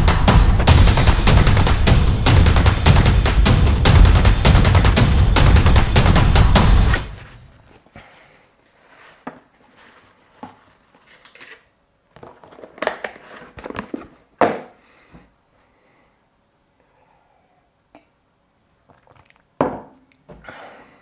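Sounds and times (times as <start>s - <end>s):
soft crinkling and rustling: 7.9s - 14.4s.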